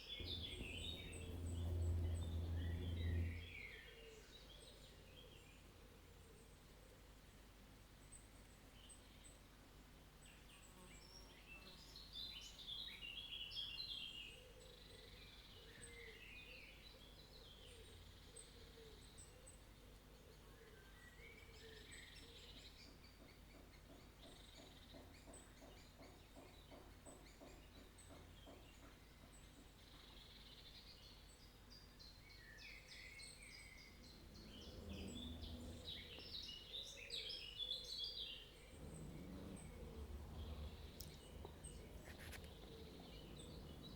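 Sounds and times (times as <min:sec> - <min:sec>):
low steady hum: 0:00.1 - 0:03.8, 0:33.7 - 0:36.8, 0:38.6 - 0:43.9.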